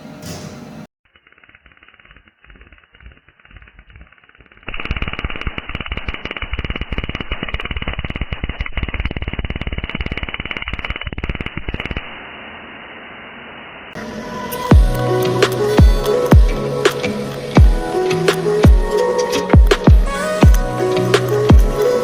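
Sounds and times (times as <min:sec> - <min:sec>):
welding arc crackling and popping: 0:01.0 - 0:22.0
steady hiss: 0:01.4 - 0:22.0
music: 0:14.0 - 0:22.0.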